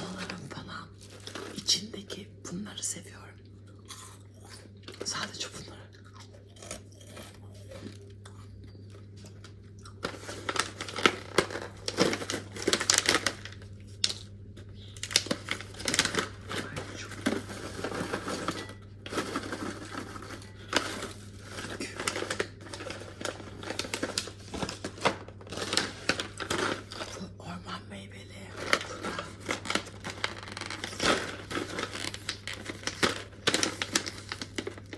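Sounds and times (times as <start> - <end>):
plastic packets crinkling: 0.0 - 1.9, 9.2 - 14.3, 14.9 - 27.3, 28.4 - 34.9
faint steady hum: 0.0 - 34.9.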